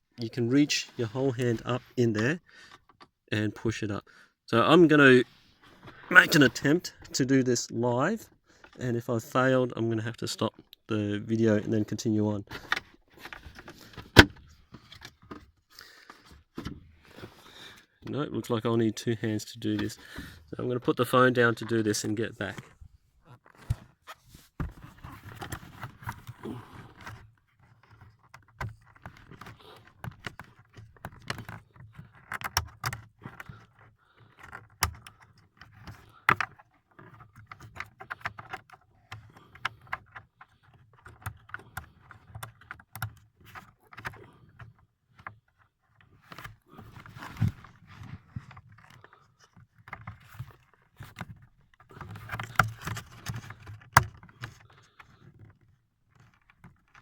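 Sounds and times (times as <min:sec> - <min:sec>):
rustling handling noise: 0:21.5 - 0:57.0
plastic trim clicks and scraping: 0:23.3 - 0:57.0.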